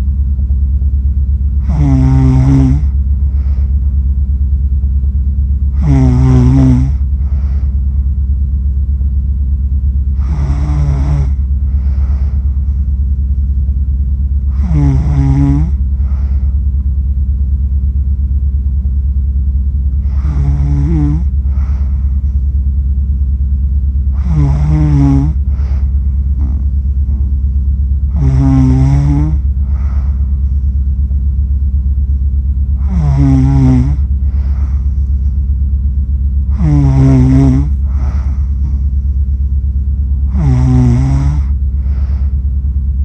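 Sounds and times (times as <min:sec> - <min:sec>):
steady low hum: 0:00.0 - 0:43.0
faint breaths: 0:01.5 - 0:04.4, 0:05.4 - 0:09.1, 0:09.9 - 0:17.3, 0:19.8 - 0:43.0
person snoring: 0:01.6 - 0:03.8, 0:05.7 - 0:07.7, 0:10.1 - 0:12.7, 0:14.5 - 0:16.6, 0:20.0 - 0:22.4, 0:24.1 - 0:27.5, 0:28.1 - 0:30.6, 0:32.8 - 0:35.3, 0:36.5 - 0:39.1, 0:40.2 - 0:42.4.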